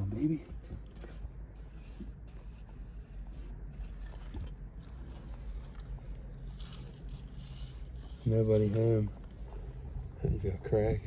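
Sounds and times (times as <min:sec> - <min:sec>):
dirt crunching and scraping: 0:00.6 - 0:10.0.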